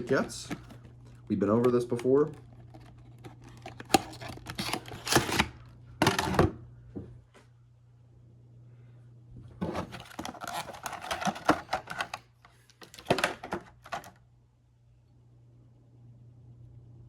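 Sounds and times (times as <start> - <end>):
cardboard box being opened: 2.2 - 5.5, 9.6 - 12.2.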